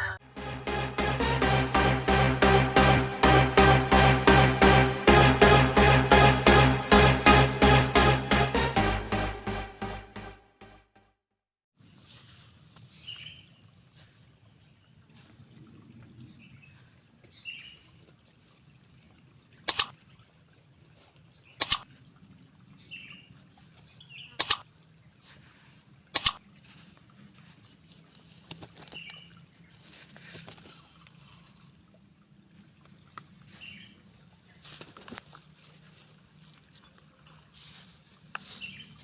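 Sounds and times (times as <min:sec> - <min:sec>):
loud sharp clicks: 0:19.7 - 0:19.9, 0:21.6 - 0:21.8, 0:24.4 - 0:24.6, 0:26.2 - 0:26.4.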